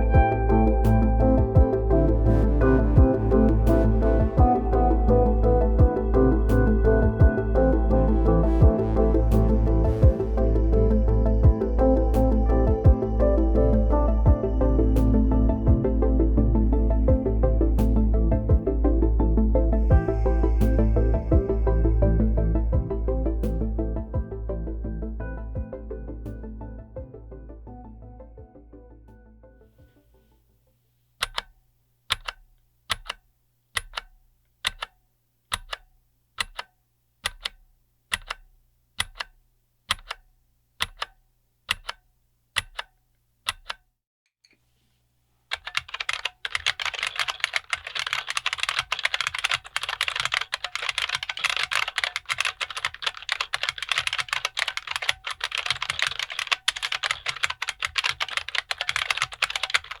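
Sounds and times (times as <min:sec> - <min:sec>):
keyboard keys clicking: 0:31.2 - 0:31.5, 0:32.1 - 0:33.2, 0:33.8 - 0:42.0, 0:42.6 - 0:43.8, 0:45.5 - 1:00.0
fast typing on keyboard: 0:45.5 - 1:00.0.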